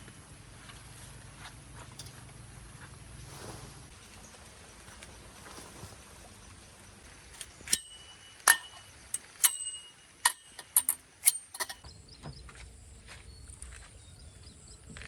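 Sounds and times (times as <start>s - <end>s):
cookware clinking: 7.4s - 11.8s.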